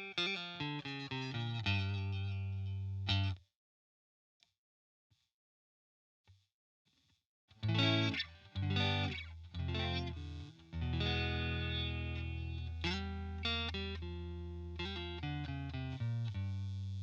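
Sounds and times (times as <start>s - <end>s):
electric guitar strumming chords: 0.0s - 3.3s, 7.6s - 16.8s.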